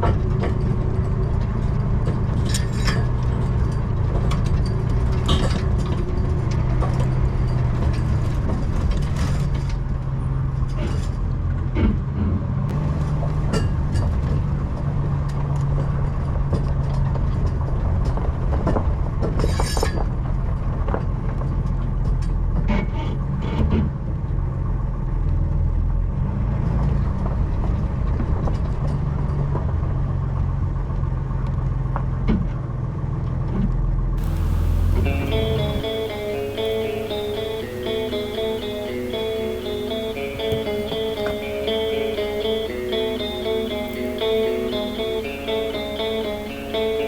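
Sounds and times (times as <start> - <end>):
heavy engine running: 0.0 - 10.6, 12.7 - 18.0, 34.2 - 47.0
guitar music: 34.2 - 47.0.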